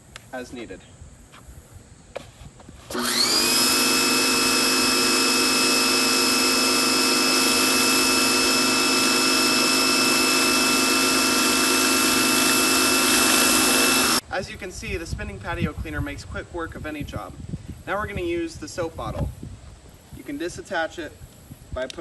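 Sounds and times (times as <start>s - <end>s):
pressure washer motor whining: 2.9s - 14.2s.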